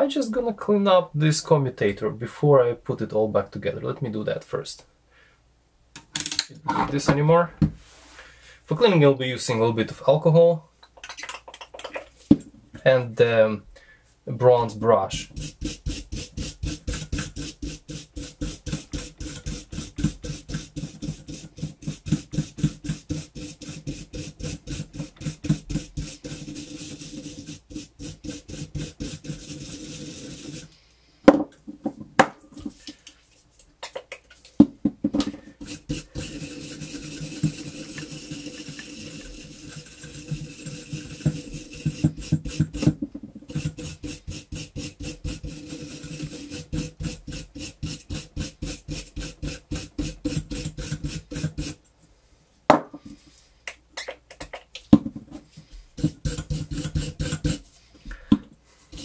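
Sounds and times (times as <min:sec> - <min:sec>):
wire brush scrubbing metal: 0:14.8 - 0:30.8, 0:35.6 - 0:51.9, 0:56.0 - 0:57.8, 0:58.8 - 0:59.0.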